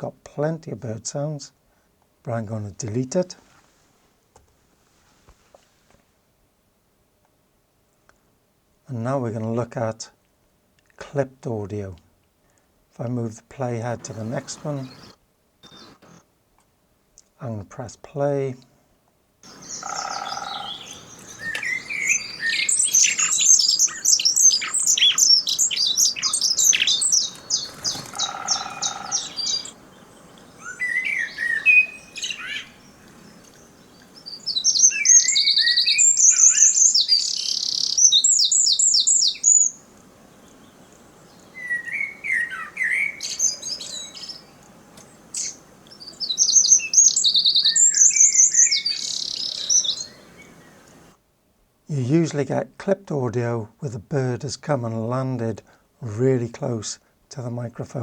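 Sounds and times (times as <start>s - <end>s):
birds chirping and trilling: 13.7s - 16.2s, 19.4s - 51.1s.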